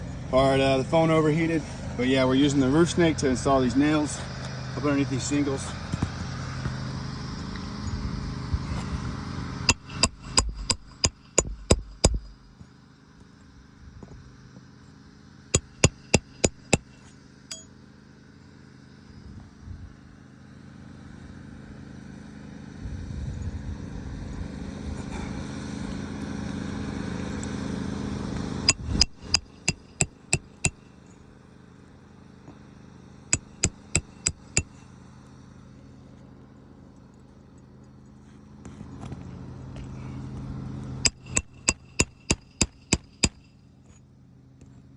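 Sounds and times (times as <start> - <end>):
hammer blows on nails: 9.6 - 12.6, 15.6 - 17.6, 28.6 - 31.0, 33.4 - 34.8, 41.0 - 43.6.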